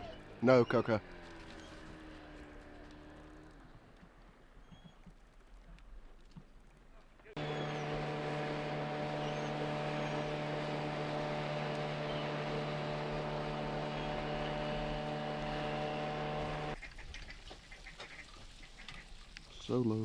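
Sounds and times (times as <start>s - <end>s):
motor humming: 7.4s - 16.8s
faint waterfowl calls: 16.8s - 19.2s.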